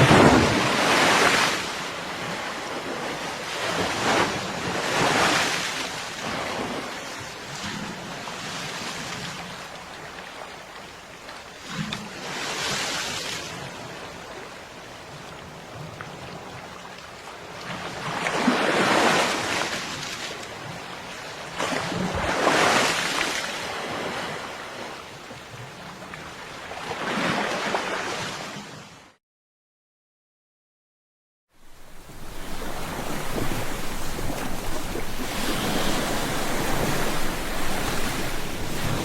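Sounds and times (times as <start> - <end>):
ocean surf breaking on beach: 0.0 - 10.0, 31.6 - 39.0.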